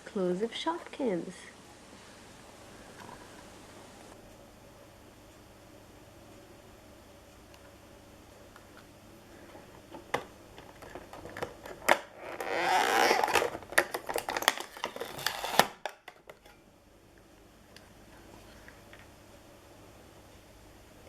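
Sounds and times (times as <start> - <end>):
packaging rustling: 10.7 - 16.0.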